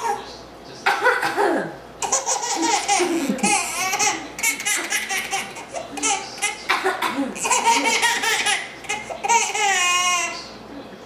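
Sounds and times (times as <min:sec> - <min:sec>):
baby laughing: 0:02.0 - 0:10.4.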